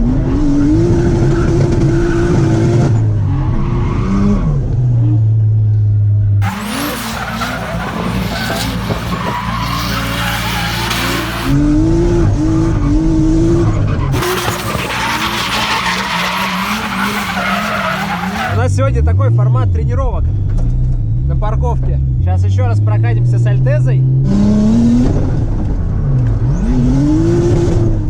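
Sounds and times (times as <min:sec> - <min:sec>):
car engines revving high: 0:00.0 - 0:05.4, 0:06.3 - 0:18.6, 0:24.0 - 0:28.0
tyres skidding and squealing: 0:06.4 - 0:11.6, 0:12.5 - 0:18.7.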